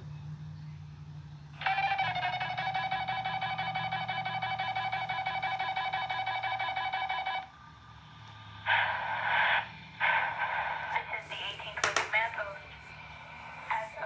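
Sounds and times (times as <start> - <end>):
harsh electronic buzzing: 1.6 - 7.5
two-tone electronic alarm: 1.6 - 11.8.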